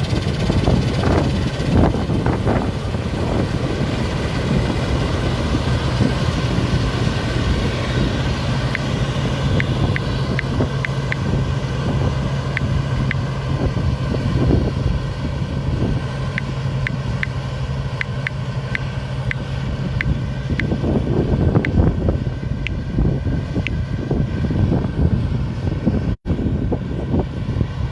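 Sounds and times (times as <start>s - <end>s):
farm machine engine humming: 0.0s - 27.9s
short high ticks: 18.0s - 19.4s.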